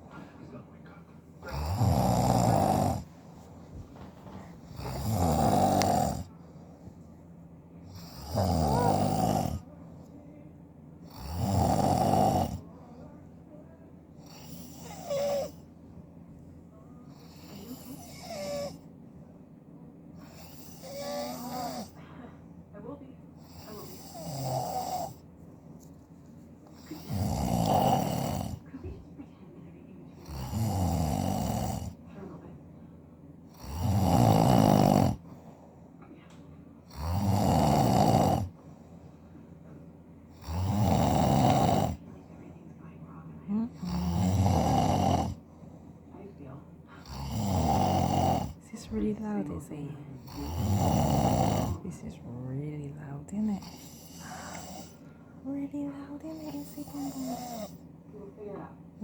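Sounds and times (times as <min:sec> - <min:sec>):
man snoring loudly: 0:01.5 - 0:03.1, 0:04.7 - 0:06.3, 0:08.0 - 0:09.6, 0:11.1 - 0:12.6, 0:20.3 - 0:22.0, 0:23.5 - 0:25.2, 0:27.0 - 0:28.6, 0:30.2 - 0:32.0, 0:33.6 - 0:35.2, 0:36.9 - 0:38.5, 0:40.4 - 0:42.0, 0:43.8 - 0:45.4, 0:47.0 - 0:48.6, 0:50.2 - 0:51.8, 0:56.4 - 0:57.8.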